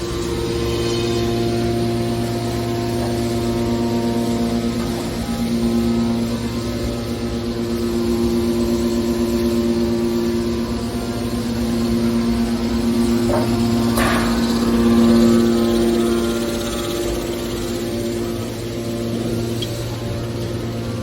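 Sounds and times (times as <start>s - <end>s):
scrap metal baler humming: 0.0s - 21.0s.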